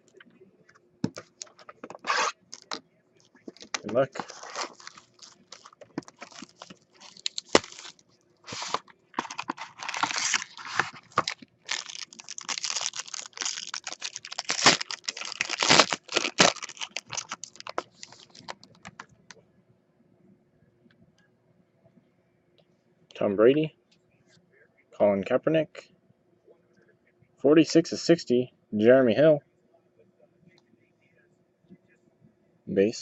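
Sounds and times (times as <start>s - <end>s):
packaging tearing: 1.4s - 2.8s, 3.6s - 19.0s.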